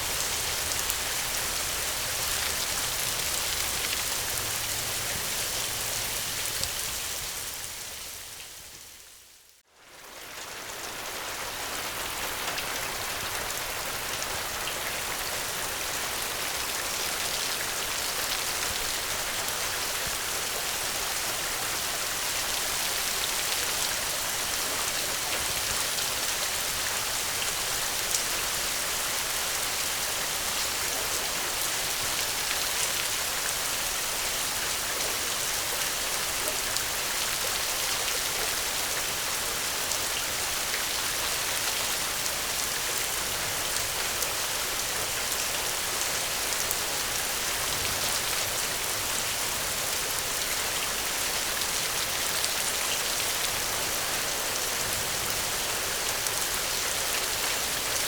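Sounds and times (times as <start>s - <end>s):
dense rainfall: 0.0s - 58.0s.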